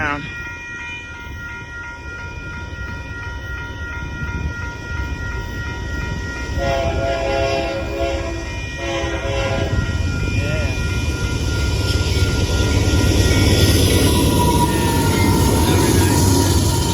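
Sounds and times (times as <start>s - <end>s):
crossing signal bell ringing: 0.0s - 16.9s
train rumble: 0.0s - 16.9s
locomotive horn blasts: 6.6s - 10.0s.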